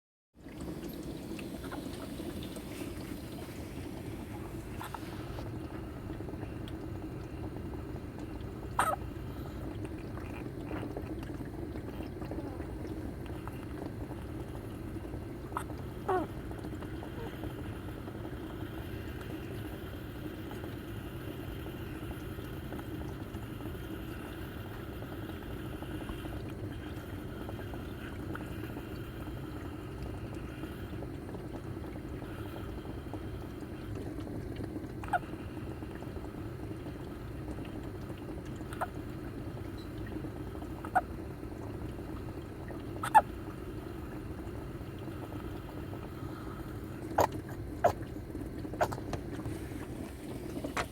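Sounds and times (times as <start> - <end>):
low background hum: 0.4 - 50.9
short sharp hiccups: 8.8 - 9.0, 48.8 - 49.1.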